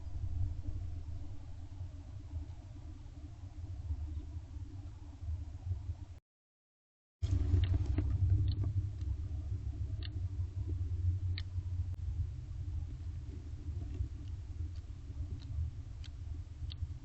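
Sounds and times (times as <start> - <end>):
steady low rumble: 0.0 - 6.2, 7.2 - 17.0
faint scattered clicks: 7.2 - 11.9, 12.8 - 17.0.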